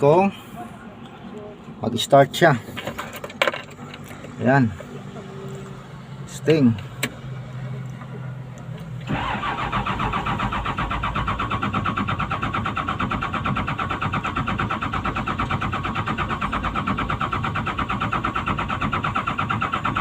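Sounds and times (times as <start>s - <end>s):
diesel engine cranking on starter: 6.7s - 20.0s.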